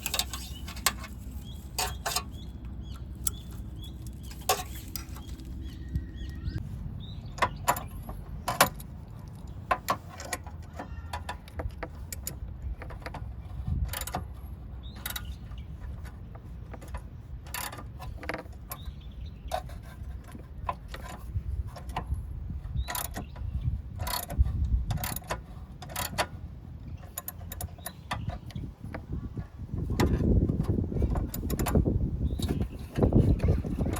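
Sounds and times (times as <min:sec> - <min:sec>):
hand tools clinking on metal: 0:00.0 - 0:02.4.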